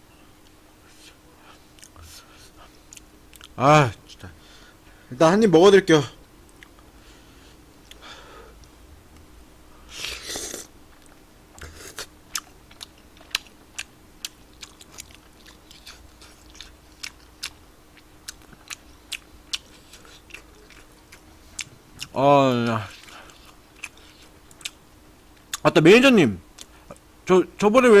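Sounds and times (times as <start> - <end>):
chewing with mouth smacks: 2.9 - 3.6, 10.9 - 22.2, 22.8 - 24.8.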